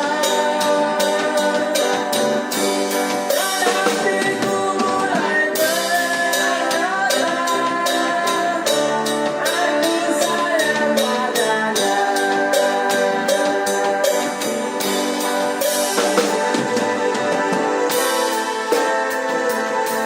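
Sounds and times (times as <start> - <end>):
music with steady beat and singing: 0.0 - 20.0.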